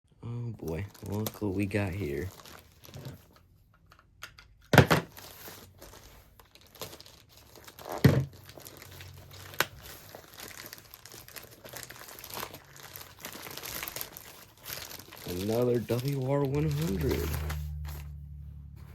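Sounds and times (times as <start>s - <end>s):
wrapping crinkling and tearing: 0.6s - 3.5s, 5.1s - 18.2s.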